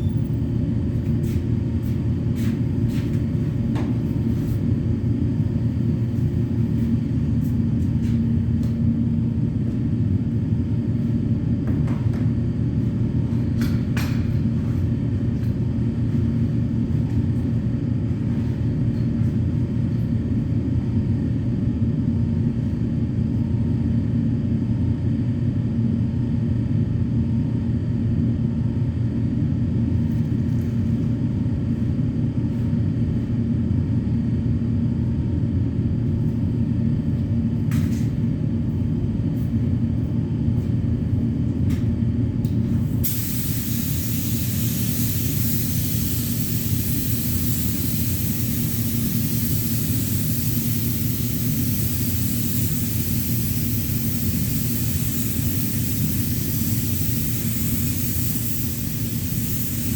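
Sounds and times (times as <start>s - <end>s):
low machine hum: 0.0s - 59.9s
spray gun hissing: 43.0s - 59.9s.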